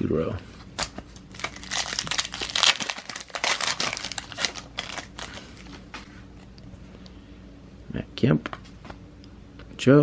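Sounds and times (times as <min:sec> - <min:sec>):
plastic wrapper crinkling: 0:00.8 - 0:05.8.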